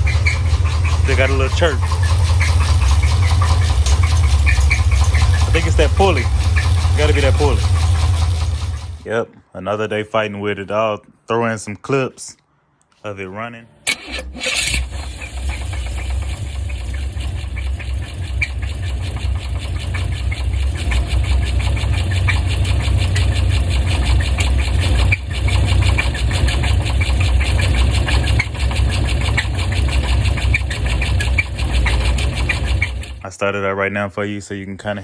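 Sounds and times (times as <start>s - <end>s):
car engine running: 0.0s - 9.1s, 14.0s - 33.2s
fast ticking engine knock: 0.0s - 9.1s, 14.7s - 33.2s.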